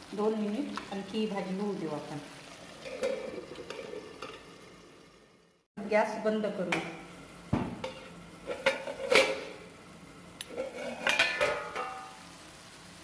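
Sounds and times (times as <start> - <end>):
metal spoon scraping a pan: 7.8 - 9.6, 10.4 - 12.2.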